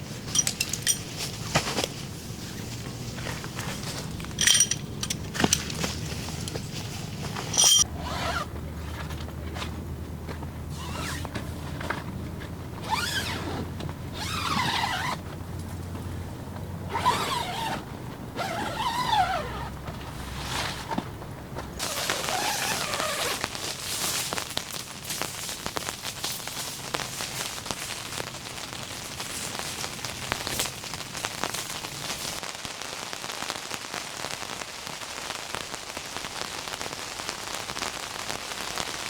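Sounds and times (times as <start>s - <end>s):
scraping and rustling handling noises: 0.0s - 16.1s, 19.8s - 32.4s
sharp metallic clinks: 0.3s - 1.2s, 4.1s - 5.8s, 7.5s - 7.8s.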